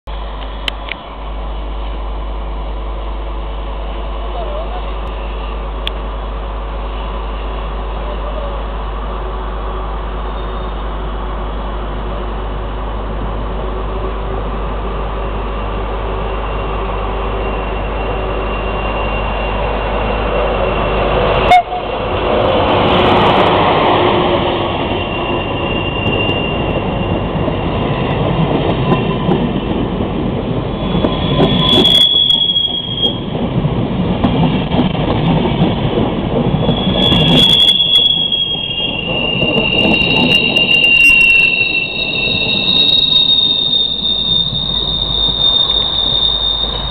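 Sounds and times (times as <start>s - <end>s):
train hum: 0.1s - 46.9s
wheels rumbling on rails: 0.1s - 46.9s
high squeals: 15.3s - 22.0s, 23.2s - 29.3s, 30.6s - 33.3s, 36.5s - 46.9s.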